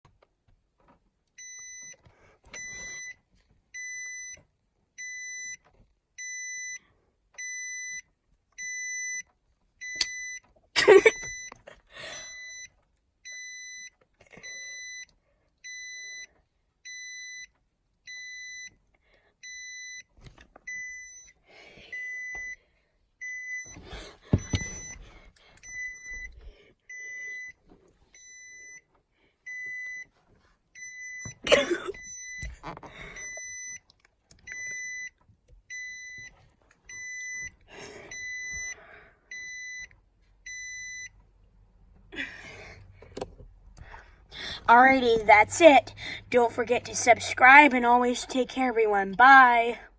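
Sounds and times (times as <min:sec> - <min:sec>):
car warning beeps: 0:01.4 - 0:03.2, 0:03.8 - 0:04.4, 0:05.0 - 0:06.8, 0:07.4 - 0:17.5, 0:18.1 - 0:18.8, 0:19.4 - 0:20.1, 0:20.7 - 0:22.6, 0:23.2 - 0:30.1, 0:30.7 - 0:41.2.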